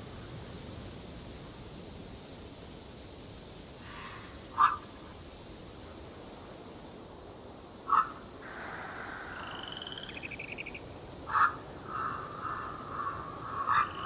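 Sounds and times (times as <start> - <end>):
loud animal call: 7.9 - 10.7, 11.3 - 14.0
bird song: 9.3 - 14.0.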